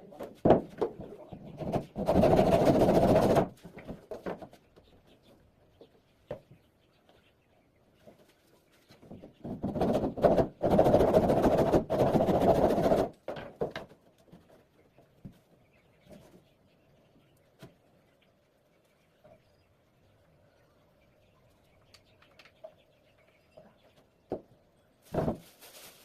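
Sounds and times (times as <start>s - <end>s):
tool working wood: 1.6s - 3.5s.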